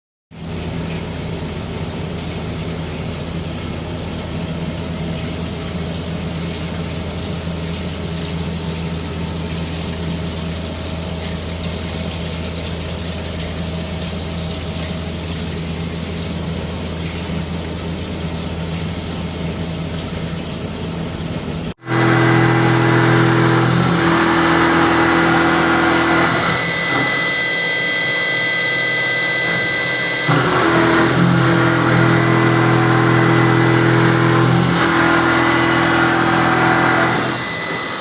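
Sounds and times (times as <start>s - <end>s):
drilling machine humming: 21.8s - 38.0s.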